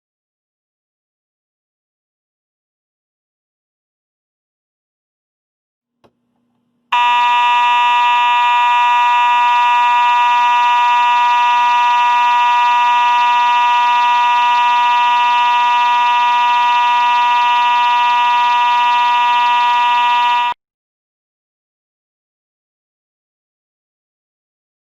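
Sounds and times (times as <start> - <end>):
fire alarm horn buzzing: 6.9 - 20.6.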